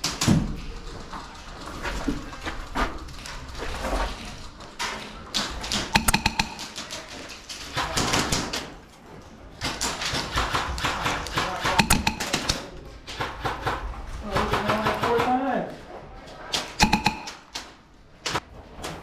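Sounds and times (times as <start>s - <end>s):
rapid clicks: 5.6s - 8.1s, 10.1s - 12.6s, 16.8s - 17.5s
sharp clicks and taps: 5.9s - 7.0s, 11.6s - 12.6s, 16.8s - 17.6s.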